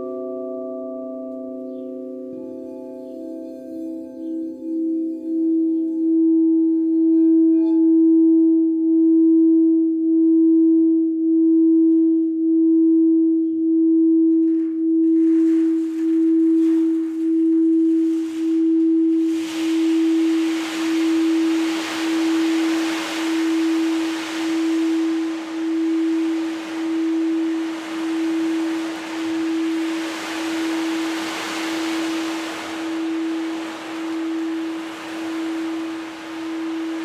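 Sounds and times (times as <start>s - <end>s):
singing bowl humming: 0.0s - 37.0s
hiss: 15.2s - 37.0s.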